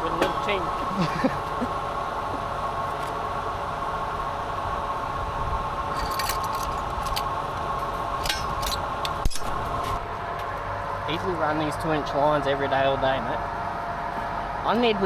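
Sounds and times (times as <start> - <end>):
vehicle engine whining: 0.0 - 15.0
metallic clinks and rattles: 2.8 - 3.2, 5.9 - 10.0.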